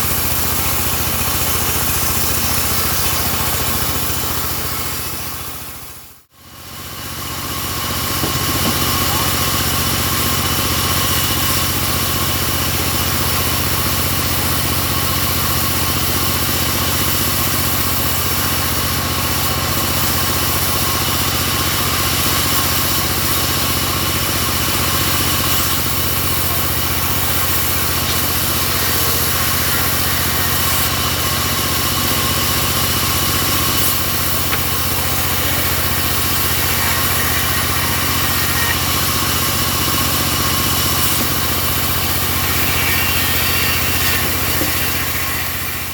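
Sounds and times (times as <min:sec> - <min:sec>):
sawmill engine drone: 0:00.0 - 0:45.9
high whine: 0:33.0 - 0:45.9.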